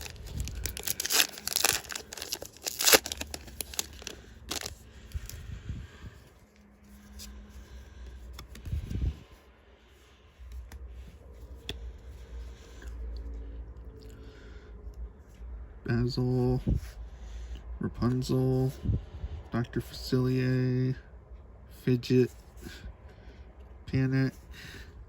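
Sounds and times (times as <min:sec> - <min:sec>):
foil wrapper tearing and crinkling: 0:00.0 - 0:05.4.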